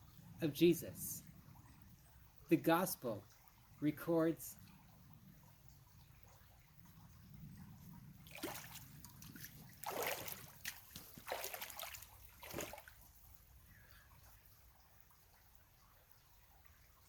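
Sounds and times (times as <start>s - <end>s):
water splashing as someone wades: 8.2s - 13.3s.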